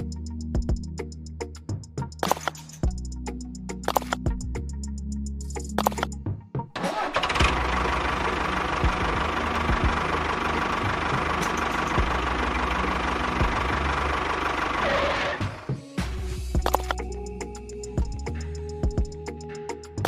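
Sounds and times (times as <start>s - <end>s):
music: 0.0s - 14.3s, 15.0s - 20.0s
motor running: 7.1s - 15.5s.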